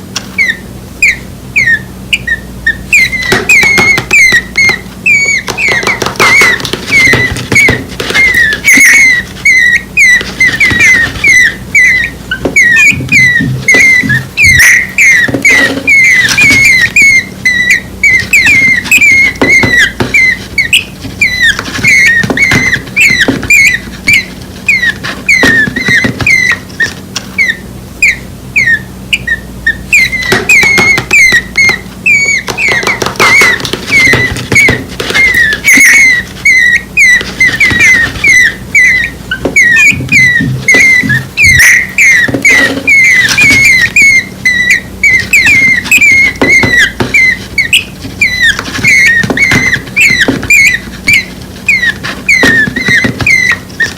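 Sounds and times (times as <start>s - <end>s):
nestling birds cheeping: 0.0s - 53.9s.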